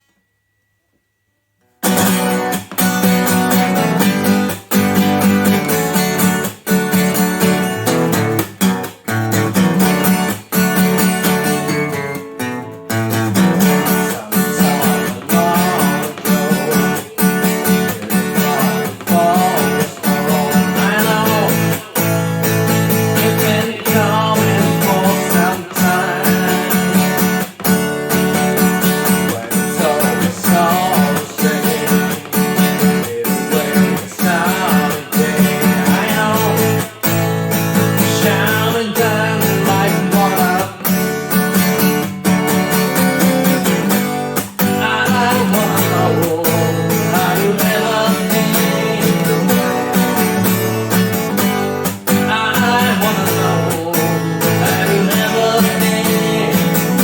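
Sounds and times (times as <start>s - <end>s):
acoustic guitar strumming: 0.0s - 57.0s
person singing: 13.4s - 57.0s.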